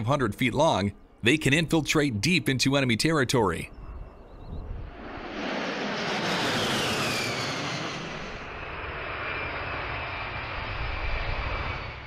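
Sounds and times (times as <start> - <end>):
jet passing with whine: 3.7 - 12.0.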